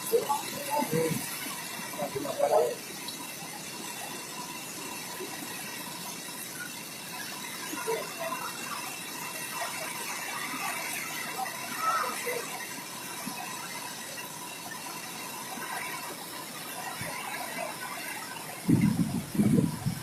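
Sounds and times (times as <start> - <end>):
waterfall rushing: 0.0 - 20.0.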